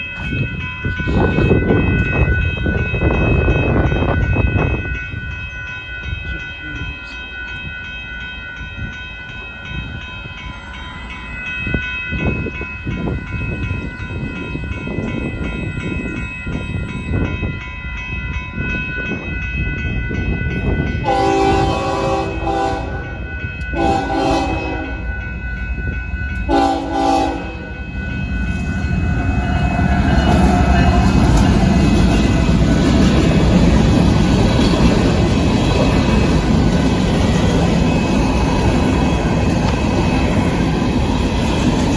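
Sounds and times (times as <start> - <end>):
freight train rumbling: 0.0 - 41.9
high-pitched ringing: 0.0 - 41.9
locomotive horn blasts: 21.0 - 25.1, 26.5 - 27.8.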